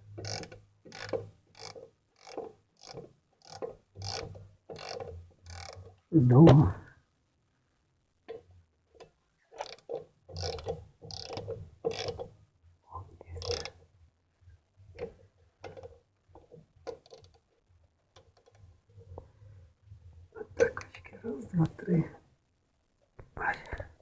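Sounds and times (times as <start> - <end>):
ratchet wrench clicking: 0.2 - 5.8, 10.4 - 12.2, 13.4 - 13.8.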